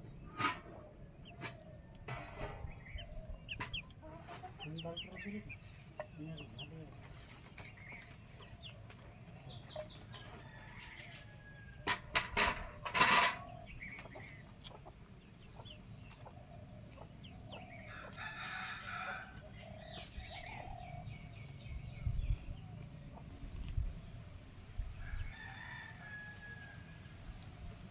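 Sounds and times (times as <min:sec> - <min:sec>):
chickens clucking: 0:00.0 - 0:27.9
rooster crowing: 0:10.3 - 0:11.8, 0:17.9 - 0:19.4, 0:25.0 - 0:27.1.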